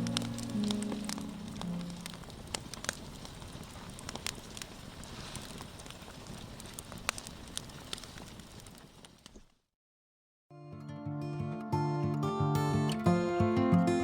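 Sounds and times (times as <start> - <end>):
campfire crackling: 0.0 - 9.7.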